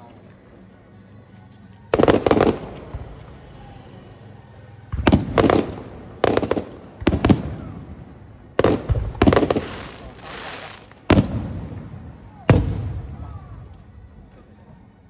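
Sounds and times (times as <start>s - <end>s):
fireworks bursting with bangs: 1.9s - 3.8s, 4.6s - 13.6s.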